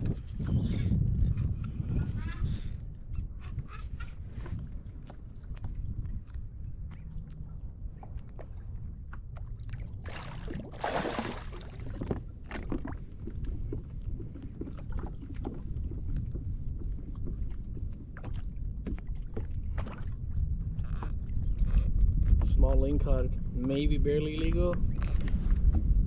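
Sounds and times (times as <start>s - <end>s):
water sloshing around kayak: 0.0s - 23.0s
steady low rumble: 4.2s - 26.0s
water splashing: 9.6s - 13.0s
clicks and knocks against hull: 11.6s - 20.2s.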